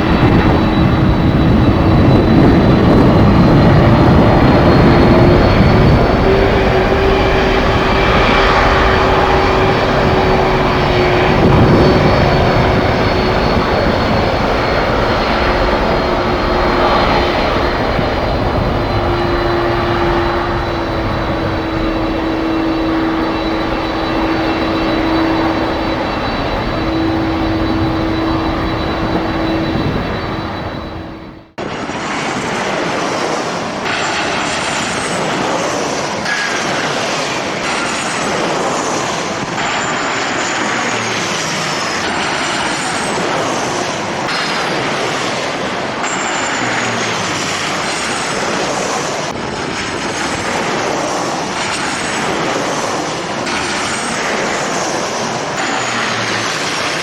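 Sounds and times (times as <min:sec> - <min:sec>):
low engine rumble: 0:00.0 - 0:31.6
jet engines whining: 0:00.0 - 0:57.0.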